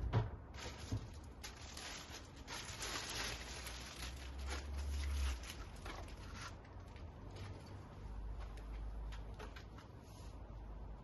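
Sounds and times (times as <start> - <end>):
packaging rustling: 0.6 - 7.7.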